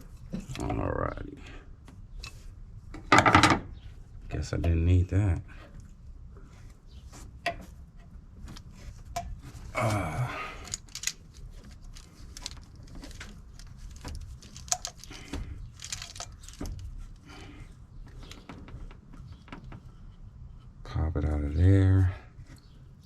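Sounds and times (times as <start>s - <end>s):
metal tools clinking and rattling: 10.6s - 17.0s.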